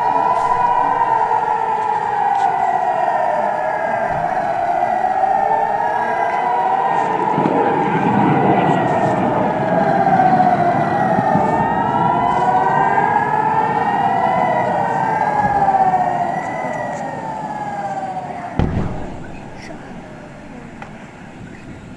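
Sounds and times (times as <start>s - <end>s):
air raid sirens wailing: 0.0s - 21.9s
sudden thump: 18.6s - 20.0s.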